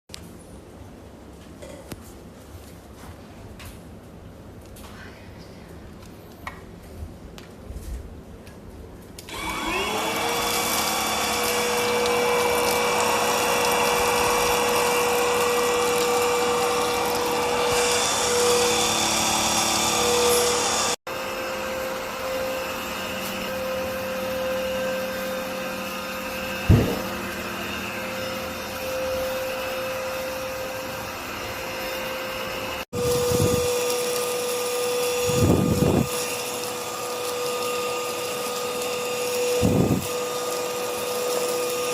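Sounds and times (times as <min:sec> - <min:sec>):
vacuum cleaner motor whining: 0:09.2 - 0:41.9
sharp knock: 0:26.7 - 0:27.1.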